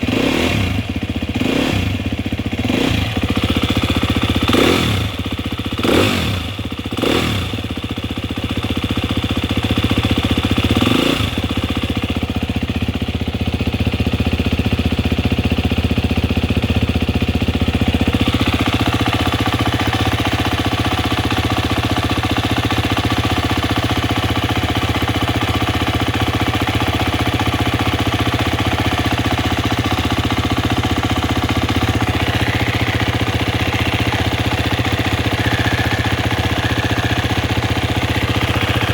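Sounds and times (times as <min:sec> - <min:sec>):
motorcycle engine revving and idling: 0:00.0 - 0:38.9.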